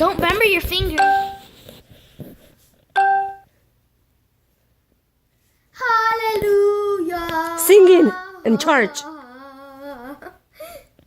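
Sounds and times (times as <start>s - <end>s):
bell-like chime: 1.0s - 1.5s, 3.0s - 3.4s.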